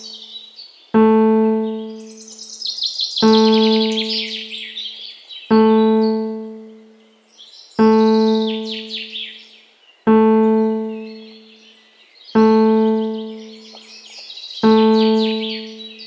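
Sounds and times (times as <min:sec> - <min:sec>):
birds chirping: 0:00.0 - 0:16.0
low electric piano note: 0:01.0 - 0:02.1, 0:03.2 - 0:04.4, 0:05.5 - 0:06.8, 0:07.8 - 0:08.9, 0:10.1 - 0:11.3, 0:12.4 - 0:13.6, 0:14.6 - 0:15.8.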